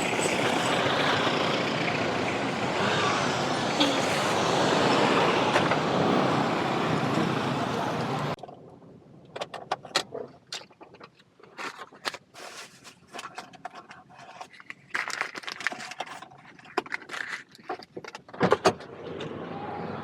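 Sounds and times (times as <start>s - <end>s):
scraping or rustling: 10.1s - 18.3s.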